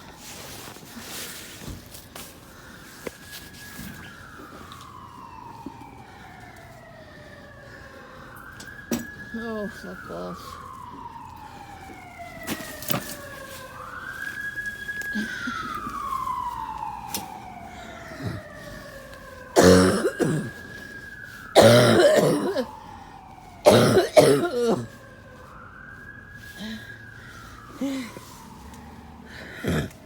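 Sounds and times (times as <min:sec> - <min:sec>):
emergency vehicle siren wailing: 0:00.0 - 0:30.0
person coughing: 0:19.6 - 0:20.6, 0:21.6 - 0:22.7, 0:23.6 - 0:24.9.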